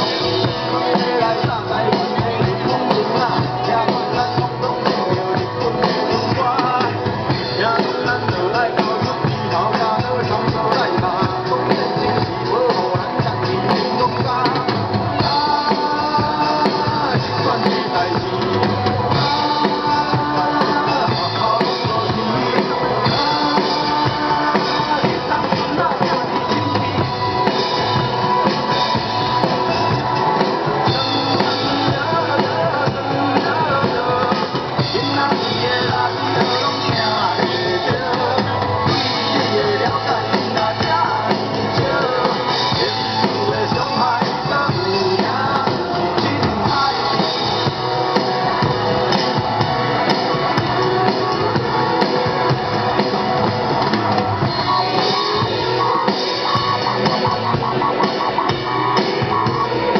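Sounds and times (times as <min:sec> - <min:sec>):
drum kit: 0:00.0 - 0:59.9
electric guitar playing: 0:00.0 - 0:59.9
rock music: 0:00.0 - 0:59.9.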